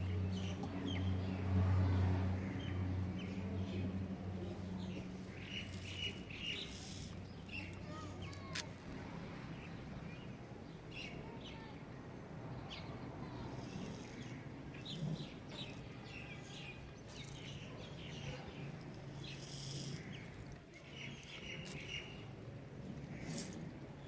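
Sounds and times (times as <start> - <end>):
birds chirping: 2.4 - 8.7, 9.5 - 22.3.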